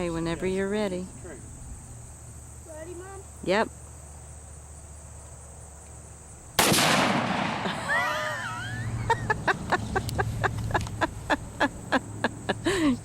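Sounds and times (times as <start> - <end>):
gunshot: 6.6 - 7.8
laughter: 7.6 - 13.0
excited voices: 7.8 - 13.0.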